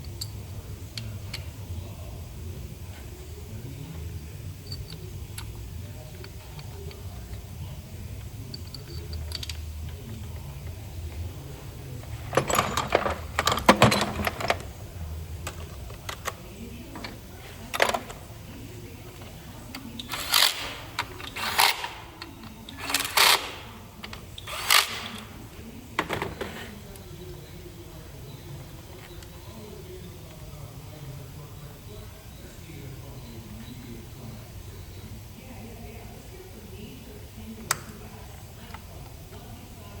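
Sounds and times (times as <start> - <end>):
low steady hum: 0.0 - 40.0
tool clicks and metal clatter: 12.3 - 14.7, 20.0 - 25.3.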